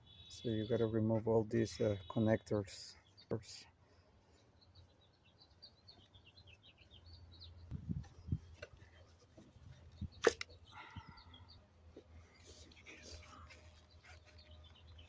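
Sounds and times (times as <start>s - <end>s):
small birds chirping: 0.0s - 15.0s
sharp click: 10.2s - 10.6s.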